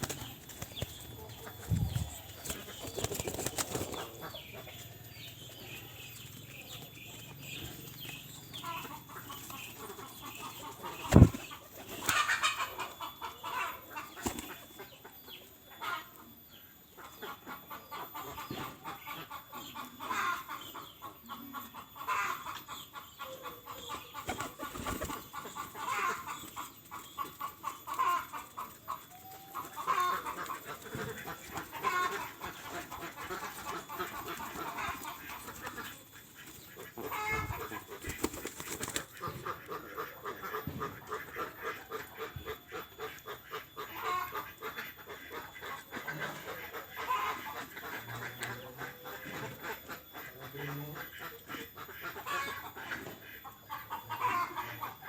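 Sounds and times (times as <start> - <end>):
pigeons flapping wings: 2.3 - 4.1, 11.0 - 12.2, 37.9 - 39.1.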